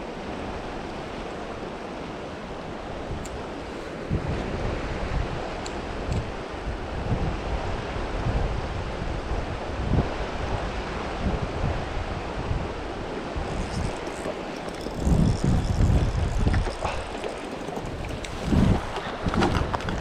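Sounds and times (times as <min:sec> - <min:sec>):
wind buffeting microphone: 0:00.0 - 0:20.0
river water rushing: 0:12.8 - 0:19.0.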